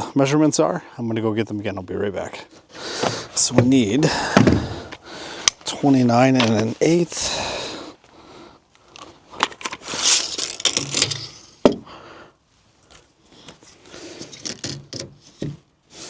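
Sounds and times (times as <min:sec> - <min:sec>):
rustling handling noise: 0:02.7 - 0:07.1, 0:08.0 - 0:11.7.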